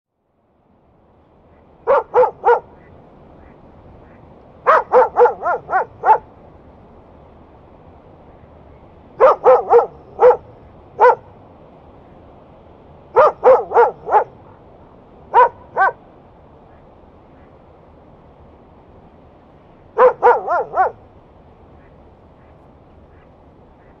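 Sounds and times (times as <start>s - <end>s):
low hiss: 0.2s - 24.0s
dog barking: 1.8s - 2.8s, 4.6s - 6.3s, 9.2s - 11.3s, 13.2s - 14.6s, 15.3s - 16.0s, 20.0s - 21.0s.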